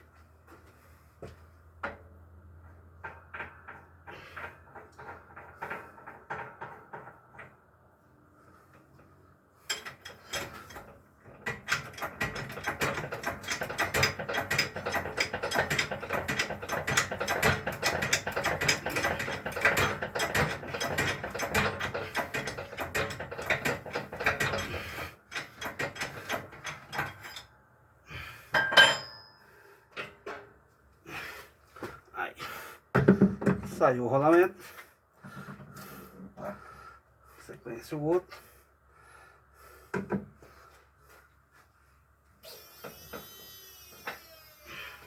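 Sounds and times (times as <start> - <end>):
metallic clicks and clatter: 9.7 - 27.5
ringing metal clank: 28.6 - 29.5.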